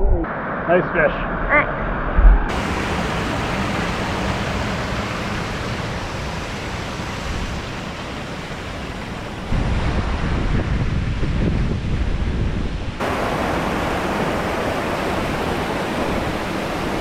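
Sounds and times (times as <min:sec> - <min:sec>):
wind buffeting microphone: 0:02.0 - 0:17.0
rushing river water: 0:02.5 - 0:11.2, 0:13.0 - 0:17.0.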